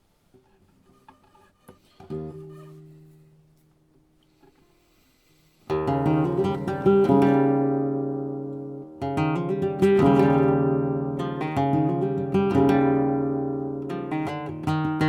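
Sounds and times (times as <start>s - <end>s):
acoustic guitar chords: 5.7s - 15.0s.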